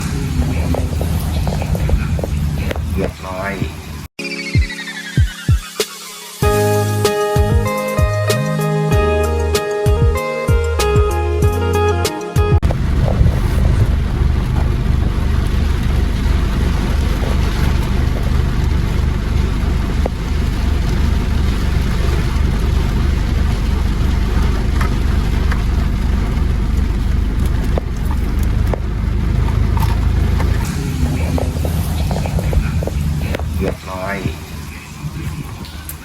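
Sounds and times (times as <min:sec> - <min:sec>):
engine running steadily: 0:00.0 - 0:04.1, 0:12.6 - 0:36.0.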